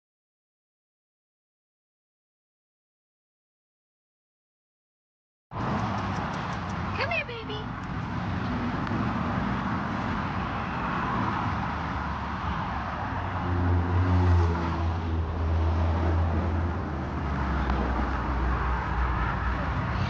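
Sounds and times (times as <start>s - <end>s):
road traffic rush: 5.5s - 20.0s
vehicle engine low drone: 5.6s - 20.0s.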